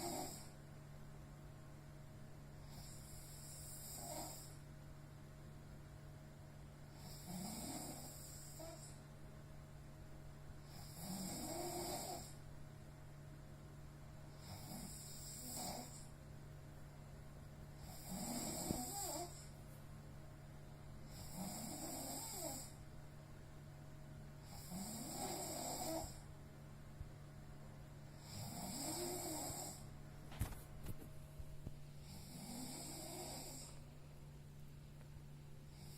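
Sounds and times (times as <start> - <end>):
person snoring: 0.0 - 0.6, 2.6 - 4.6, 6.9 - 9.0, 10.6 - 12.4, 14.3 - 16.1, 17.8 - 19.5, 21.1 - 22.8, 24.4 - 26.2, 28.1 - 29.9, 32.0 - 33.8.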